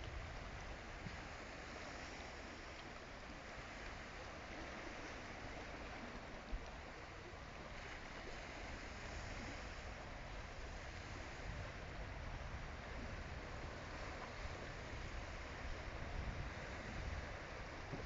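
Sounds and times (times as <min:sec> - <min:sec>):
wind buffeting microphone: 0:08.8 - 0:18.0.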